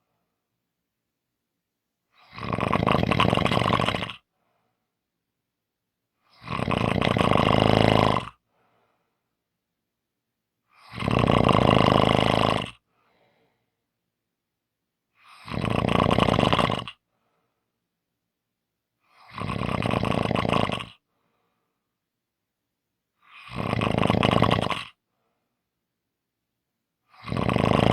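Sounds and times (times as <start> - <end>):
person snoring: 2.1 - 4.3, 6.3 - 8.4, 10.7 - 12.8, 15.2 - 17.0, 19.1 - 21.0, 23.2 - 25.0, 27.1 - 27.9.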